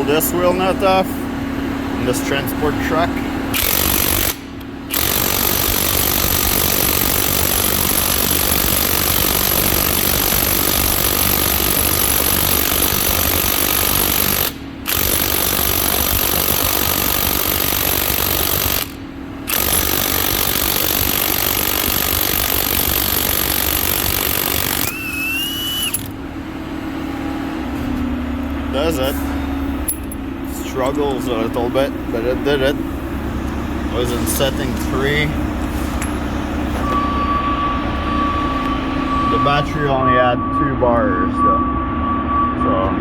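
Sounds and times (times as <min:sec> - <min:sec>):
impact wrench hammering: 0:03.5 - 0:26.2.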